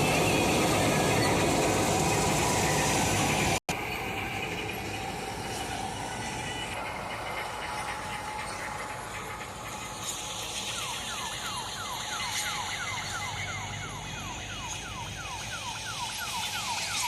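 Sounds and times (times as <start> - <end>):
machine engine running: 0.0 - 17.0
falling electronic warning tone: 10.1 - 17.0.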